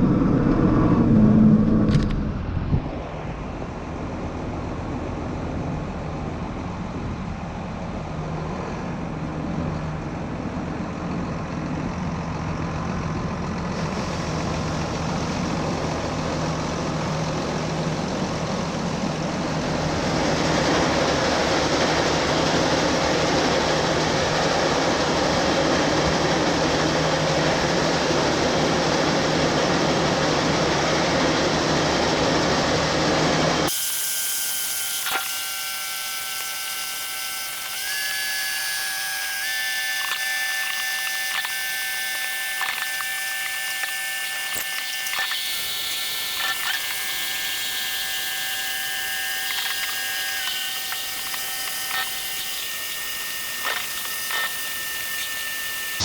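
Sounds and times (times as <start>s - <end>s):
even rushing noise: 0.0s - 4.2s
high whine: 0.0s - 6.5s, 13.7s - 56.0s
diesel machinery running: 0.0s - 56.0s
clicks: 40.0s - 48.8s, 49.4s - 56.0s.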